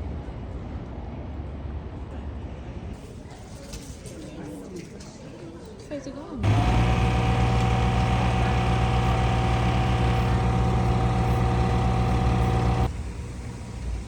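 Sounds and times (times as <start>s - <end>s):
mechanical drone with deep hum: 6.4s - 13.0s.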